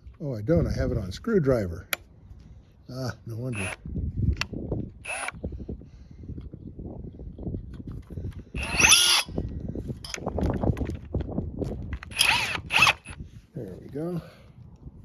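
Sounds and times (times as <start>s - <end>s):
cordless drill grinding: 3.4s - 3.8s, 4.5s - 5.5s, 7.8s - 13.3s.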